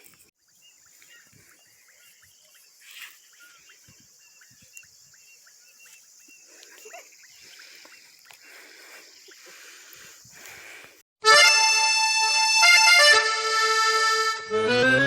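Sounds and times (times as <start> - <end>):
high insect hum: 0.4 - 11.0
accordion music: 11.2 - 15.0.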